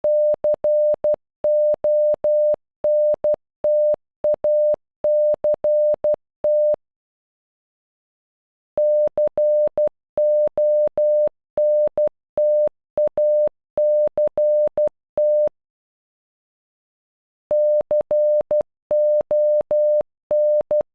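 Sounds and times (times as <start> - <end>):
morse code beeps: 8.8 - 15.5, 17.5 - 20.9.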